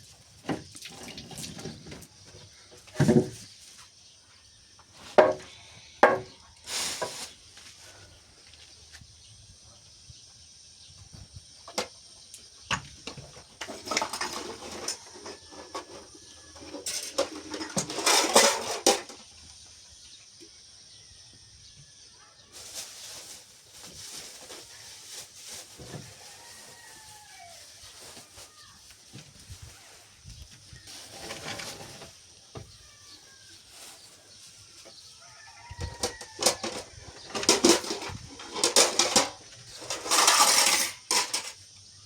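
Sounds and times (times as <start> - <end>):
household objects clattering: 2.9 - 3.5, 12.7 - 19.3, 35.8 - 41.6.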